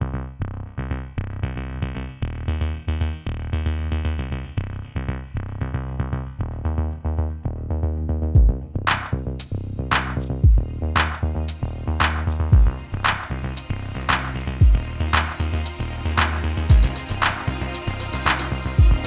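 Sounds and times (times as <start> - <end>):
electronic music: 8.4 - 19.0.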